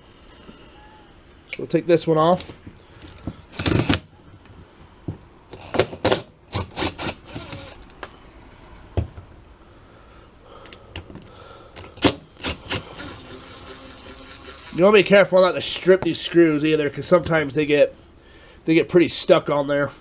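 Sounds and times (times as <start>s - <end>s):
hand tools clicking on metal: 11.8s - 15.0s.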